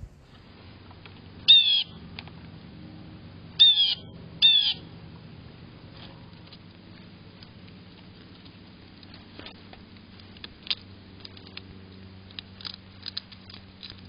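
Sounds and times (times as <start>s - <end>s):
blue jay calling: 1.4s - 2.0s, 3.5s - 5.0s.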